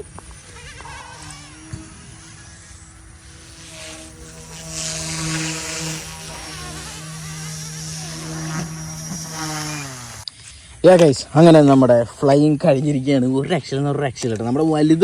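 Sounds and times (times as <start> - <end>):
rc helicopter rotors whining: 0.0 - 10.3.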